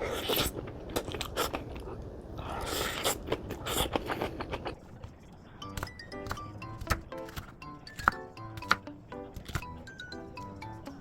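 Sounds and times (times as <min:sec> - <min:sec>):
crunchy chewing: 0:00.0 - 0:05.4
music: 0:05.5 - 0:11.0.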